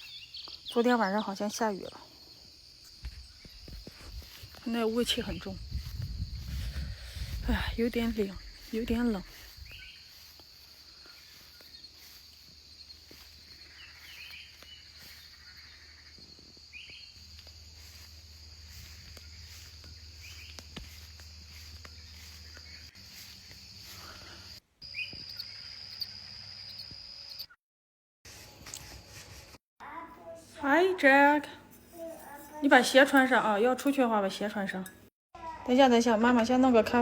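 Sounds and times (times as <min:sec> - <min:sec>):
crickets trilling: 0:00.0 - 0:27.6.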